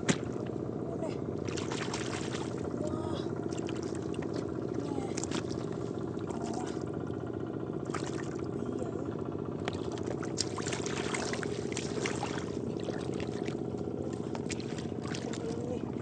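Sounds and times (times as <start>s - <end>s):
small engine running: 0.0s - 16.0s
water splashing and trickling: 1.4s - 2.8s, 3.4s - 7.0s, 7.8s - 8.9s, 9.6s - 16.0s.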